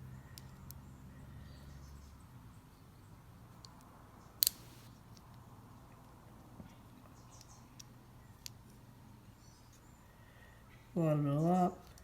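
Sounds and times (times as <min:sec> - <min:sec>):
low steady hum: 0:00.0 - 0:12.0
small metal parts clicking: 0:04.4 - 0:04.8.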